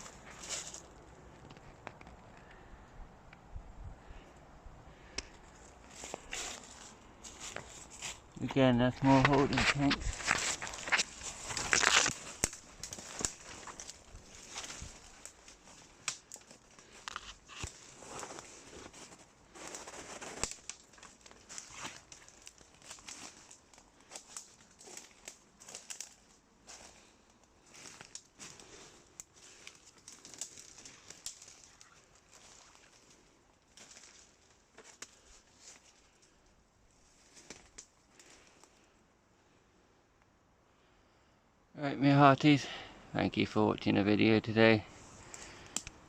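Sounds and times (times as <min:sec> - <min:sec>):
footsteps crunching through undergrowth: 0:00.0 - 0:01.0, 0:05.5 - 0:38.7
twigs crackling and snapping: 0:00.0 - 0:02.7, 0:04.9 - 0:08.4, 0:09.0 - 0:38.9, 0:45.0 - 0:46.0.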